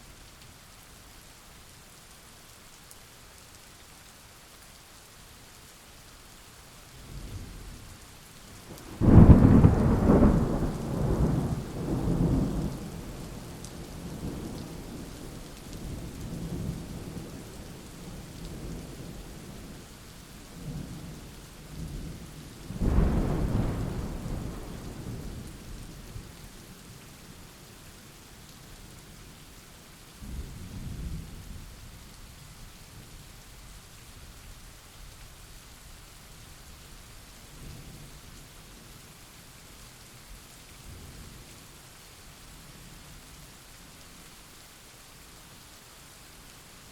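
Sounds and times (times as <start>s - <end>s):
steady rain: 0.0s - 46.9s
thunder rumbling: 8.8s - 13.4s, 22.7s - 26.0s.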